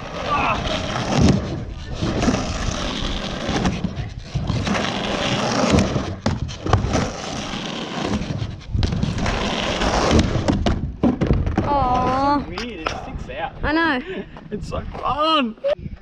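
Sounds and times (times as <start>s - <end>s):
skateboard wheels rolling on ramp: 0.0s - 12.6s.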